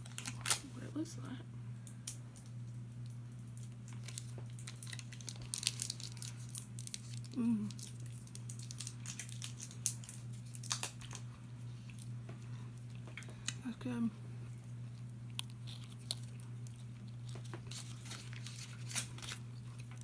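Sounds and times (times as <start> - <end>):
candy wrapper crinkling: 0.0 - 0.7, 1.8 - 20.0
person saying mmm: 7.3 - 7.8.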